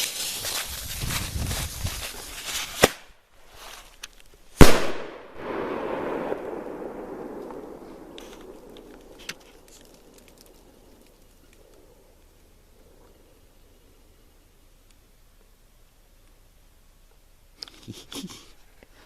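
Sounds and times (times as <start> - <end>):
crackling fuse hiss: 0.0 - 4.9
firework launch report: 4.6 - 12.2.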